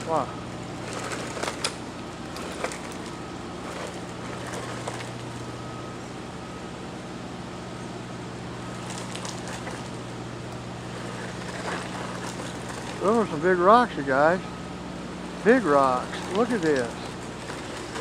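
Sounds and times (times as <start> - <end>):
wheels clicking and knocking on rocks: 0.0 - 5.5, 8.7 - 13.4, 15.4 - 18.0
toy truck electric motors whirring: 0.0 - 5.6, 10.8 - 13.6, 15.4 - 18.0.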